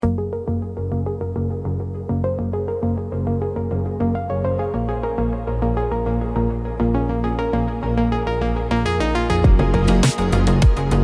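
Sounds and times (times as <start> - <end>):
upbeat electronic synthesizer music: 2.6 - 11.0.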